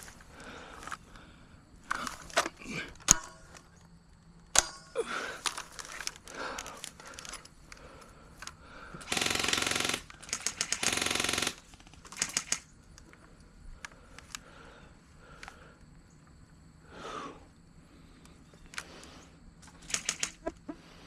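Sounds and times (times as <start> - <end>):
airsoft gun bursts: 9.0 - 12.7, 19.8 - 20.4.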